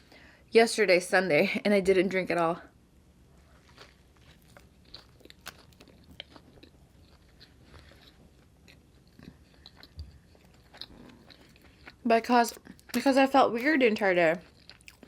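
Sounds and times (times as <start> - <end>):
person chewing crunchy food: 3.4 - 13.0, 14.3 - 15.0.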